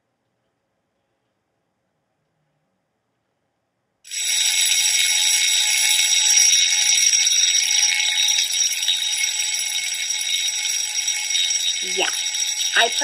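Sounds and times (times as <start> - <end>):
fire alarm ringing: 4.1 - 13.0.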